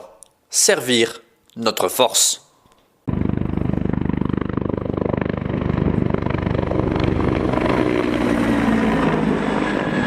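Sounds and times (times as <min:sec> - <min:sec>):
helicopter rotor beating: 0:03.1 - 0:10.0
steady engine tone: 0:03.1 - 0:10.0.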